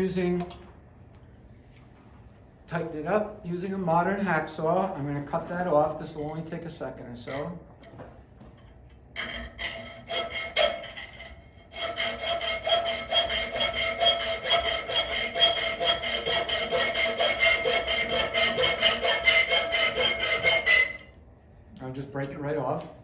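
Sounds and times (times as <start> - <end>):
hacksaw cutting metal bar: 9.2 - 21.0.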